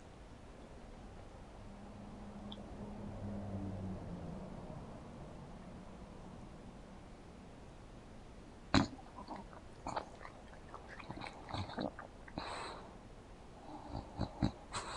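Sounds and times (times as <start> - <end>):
dog lip smacks and clicks: 8.8 - 12.4
dog noisy breath: 12.3 - 13.0, 13.6 - 14.9.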